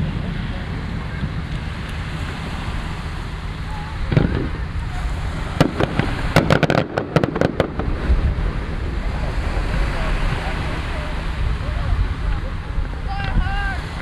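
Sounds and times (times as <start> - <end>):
low rumble: 0.0 - 14.0
firework cracks: 4.0 - 11.2
firework boom: 4.0 - 12.2.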